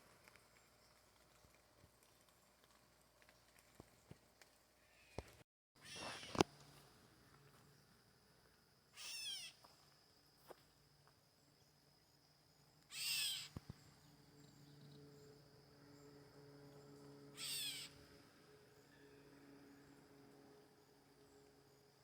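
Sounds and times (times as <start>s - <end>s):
high animal calls: 5.8s - 6.4s, 12.9s - 13.5s, 17.3s - 18.0s.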